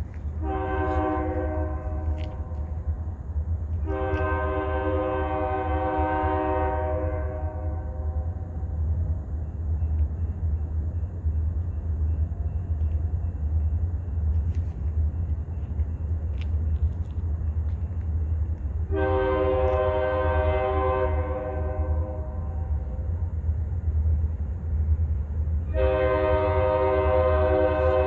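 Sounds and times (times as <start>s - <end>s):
train rumbling: 0.0s - 28.0s
locomotive air horn blast: 0.4s - 2.6s, 3.8s - 8.3s, 18.9s - 22.8s, 25.7s - 28.0s.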